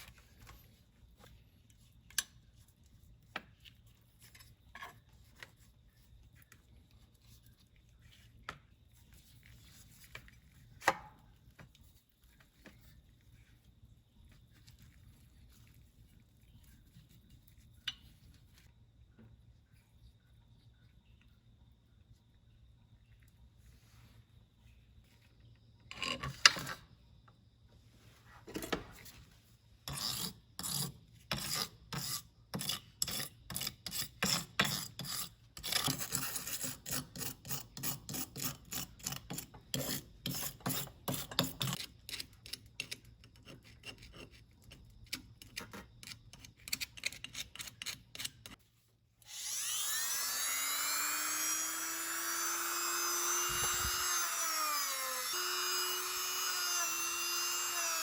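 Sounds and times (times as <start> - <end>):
hand rubbing tool part: 29.9 - 58.0
motor-driven tool whining: 49.2 - 58.0.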